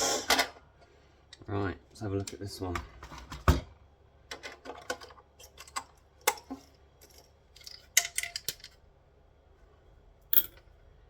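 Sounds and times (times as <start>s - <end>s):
clicks of small parts handled: 4.4s - 8.8s, 10.3s - 10.6s.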